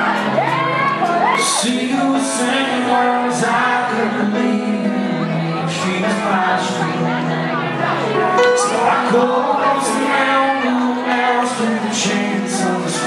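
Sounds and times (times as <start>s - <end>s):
live band playing: 0.0s - 13.0s
audience whooping: 0.4s - 1.7s.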